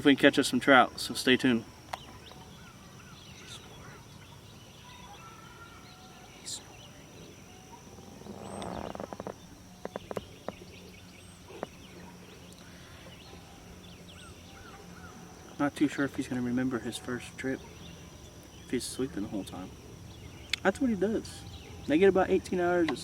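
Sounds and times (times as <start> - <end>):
faint bird chirps: 0.7 - 23.0
rustling: 7.8 - 10.7.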